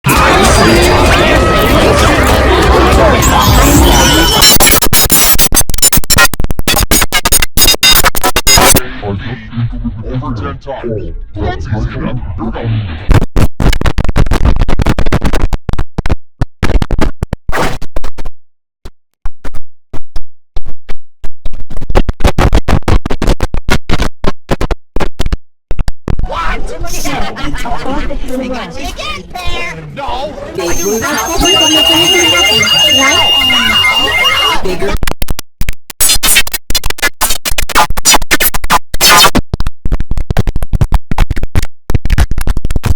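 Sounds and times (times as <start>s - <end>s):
stuttering chopped audio: 0.1s - 8.8s, 12.8s - 26.3s, 30.6s - 42.9s.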